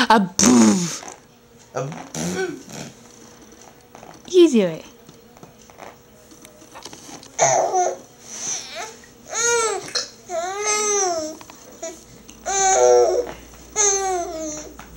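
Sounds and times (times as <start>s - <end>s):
baby babbling: 8.8s - 14.7s.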